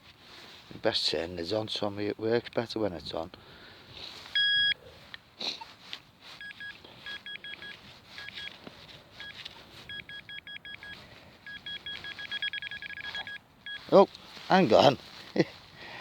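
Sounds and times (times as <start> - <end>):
pinpointer beeping: 4.4 - 4.8, 6.4 - 8.6, 9.2 - 14.0.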